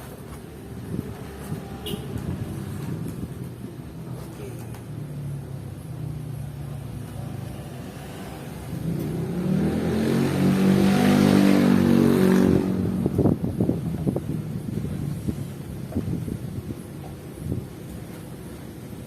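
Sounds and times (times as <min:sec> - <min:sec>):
vehicle engine passing by: 0:06.1 - 0:13.6.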